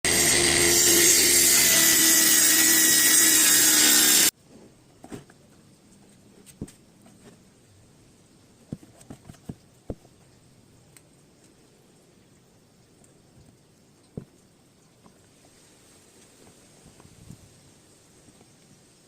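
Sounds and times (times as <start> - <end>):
trim router cutting laminate: 0.1 - 4.3.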